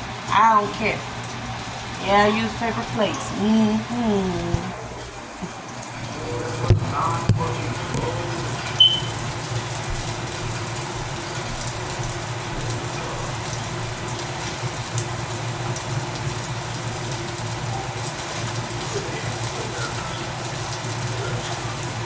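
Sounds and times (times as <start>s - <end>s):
kitchen background hum: 0.0s - 22.0s
dishes knocking: 6.7s - 8.1s.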